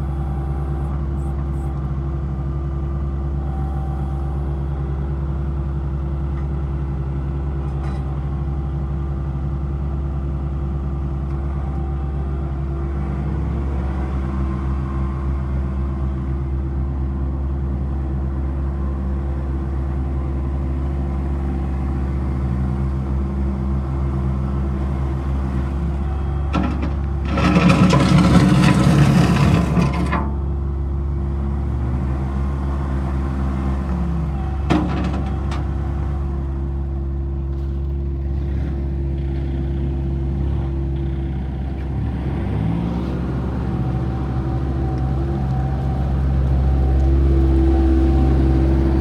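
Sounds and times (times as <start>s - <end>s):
tractor diesel engine running: 0.0s - 49.0s.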